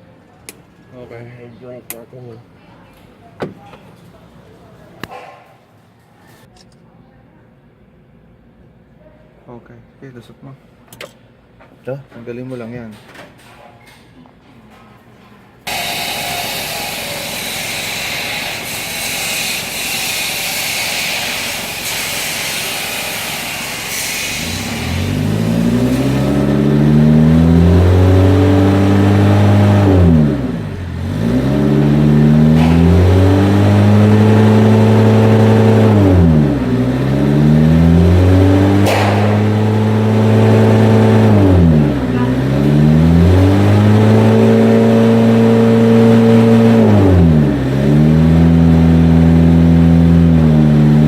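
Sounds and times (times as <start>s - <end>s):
diesel engine revving: 15.7s - 51.0s.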